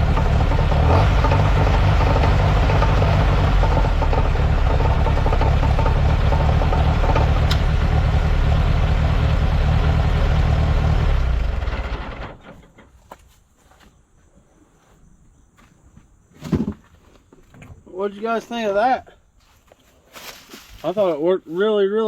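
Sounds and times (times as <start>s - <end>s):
tractor engine running: 0.0s - 13.1s.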